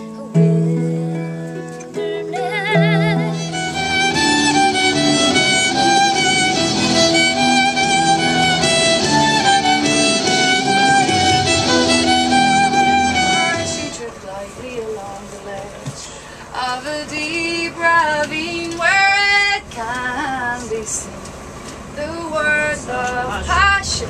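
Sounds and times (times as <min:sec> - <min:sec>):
fiddle playing: 0:01.9 - 0:14.1.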